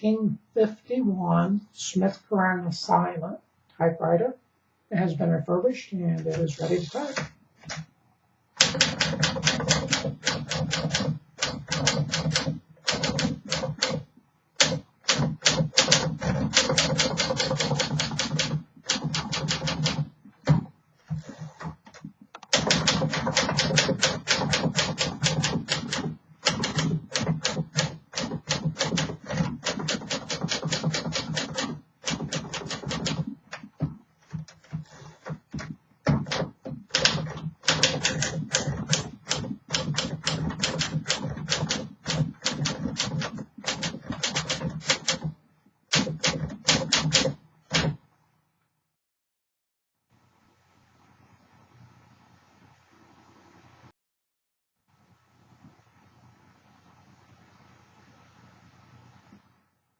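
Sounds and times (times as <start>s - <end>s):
manual typewriter typing: 8.6s - 48.0s.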